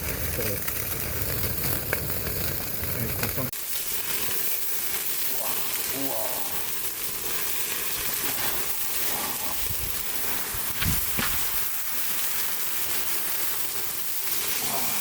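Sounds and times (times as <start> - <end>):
meat sizzling on a grill: 0.0 - 15.0
faint voice: 5.3 - 6.6, 14.6 - 15.0.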